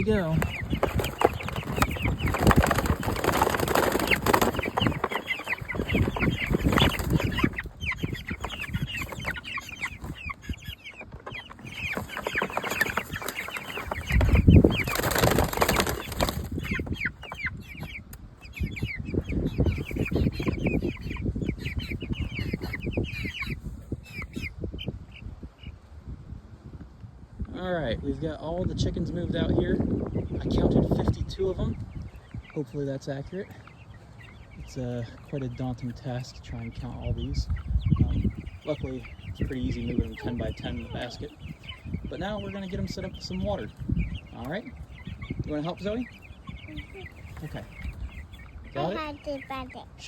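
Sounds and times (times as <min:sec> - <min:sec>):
wing flapping and scuffling: 0:00.0 - 0:23.9, 0:36.9 - 0:49.8
chicks peeping: 0:00.0 - 0:50.0.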